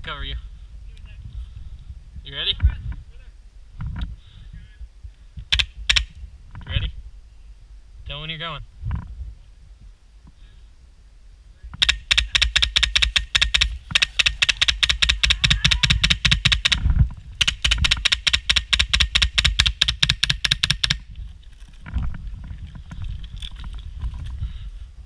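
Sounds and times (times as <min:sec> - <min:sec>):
airsoft gun firing full auto: 0:11.8 - 0:16.8, 0:17.4 - 0:21.0.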